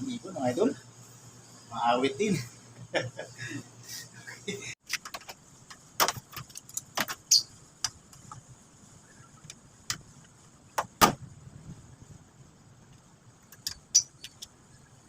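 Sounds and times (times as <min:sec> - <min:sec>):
faint high whine: 0:00.0 - 0:04.8.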